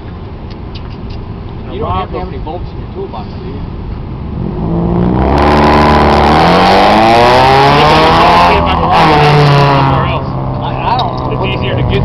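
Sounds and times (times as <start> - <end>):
petrol engine revving: 4.2 - 12.0.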